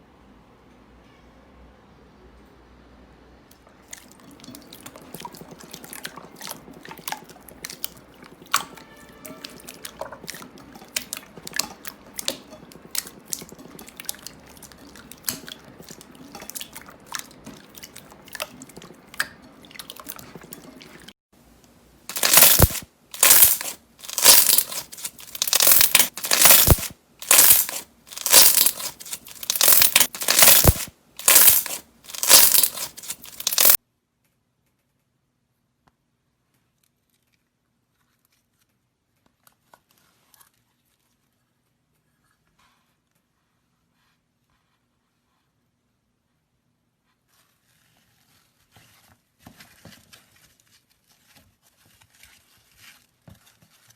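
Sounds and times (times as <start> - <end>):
slime crunching squeezes: 22.1 - 33.8.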